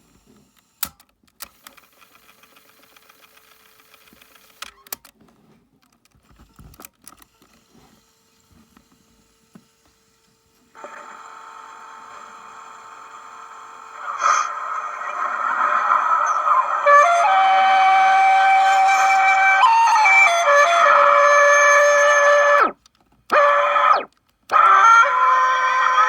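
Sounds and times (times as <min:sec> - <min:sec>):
tape hiss with held tones: 0:10.8 - 0:26.0
steady tone: 0:14.0 - 0:22.7.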